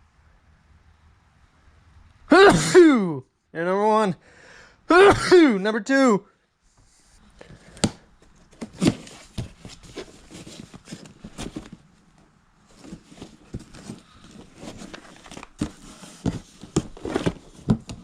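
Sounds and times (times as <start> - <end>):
rustling and crinkling: 6.7 - 18.0.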